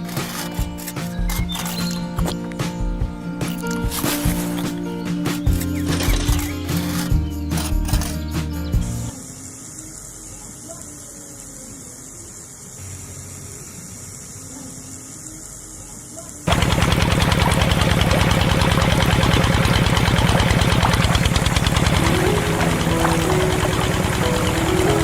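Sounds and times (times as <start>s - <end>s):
small engine starting and running: 16.5s - 25.0s.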